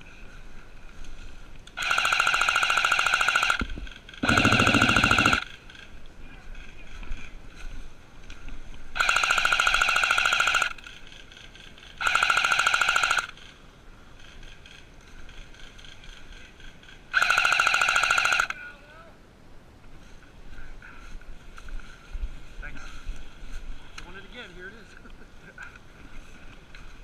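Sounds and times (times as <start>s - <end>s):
airsoft gun full-auto bursts: 1.8s - 5.6s, 9.0s - 11.0s, 12.0s - 13.4s, 17.1s - 18.6s.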